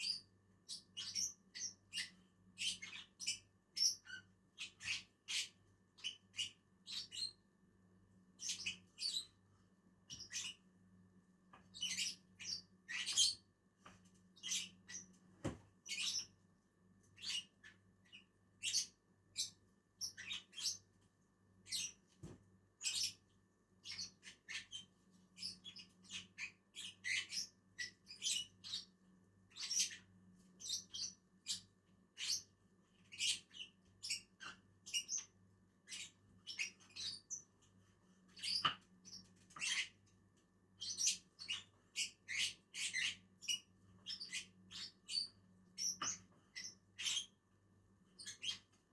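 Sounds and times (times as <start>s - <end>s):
lovebirds chirping: 0.0s - 7.3s, 11.7s - 13.4s, 15.8s - 16.3s, 17.2s - 20.8s, 23.8s - 28.9s, 29.5s - 31.6s, 40.8s - 47.3s.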